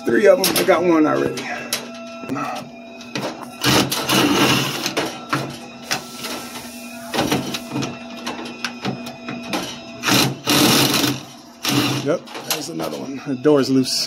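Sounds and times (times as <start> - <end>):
electrical hum: 0.0 - 14.0
power driver whirring: 10.0 - 12.2.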